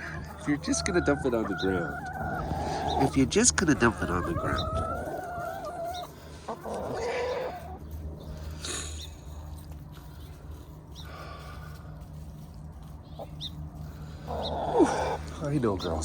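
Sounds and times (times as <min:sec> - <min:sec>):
hens clucking: 0:00.0 - 0:16.0
low hum: 0:01.9 - 0:16.0.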